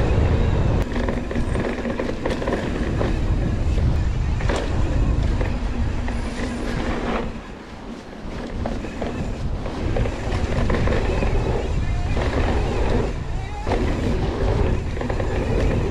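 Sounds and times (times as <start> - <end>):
bike tyre noise on dirt: 0.0 - 15.9
wind on microphone: 0.0 - 15.9
bike clattering over bumps: 0.8 - 3.7, 8.3 - 15.9.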